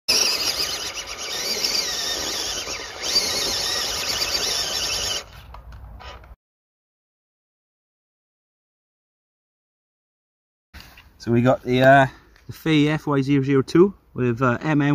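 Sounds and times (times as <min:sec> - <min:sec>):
high-pitched motor whine: 0:00.1 - 0:05.3.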